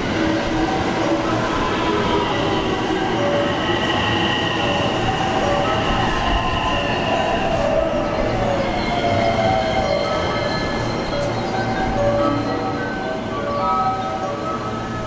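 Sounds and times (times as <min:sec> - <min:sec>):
train rail rumble: 0:00.0 - 0:15.0.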